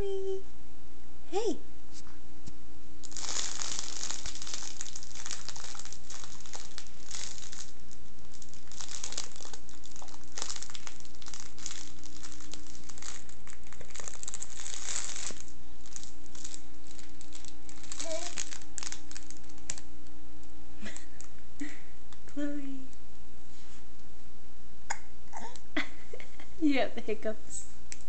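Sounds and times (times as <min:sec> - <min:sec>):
faint steady hum: 0:00.0 - 0:28.0
crinkling and rustling: 0:03.0 - 0:19.8.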